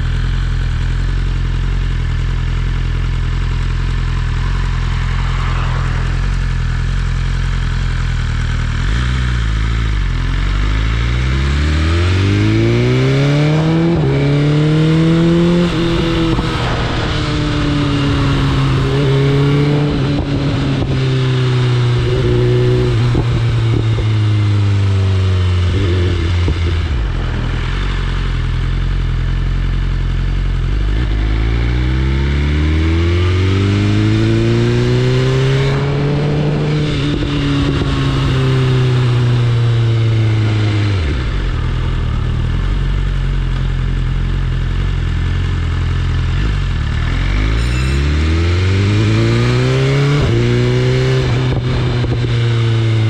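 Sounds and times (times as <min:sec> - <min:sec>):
motorcycle engine accelerating: 0:00.0 - 0:53.0.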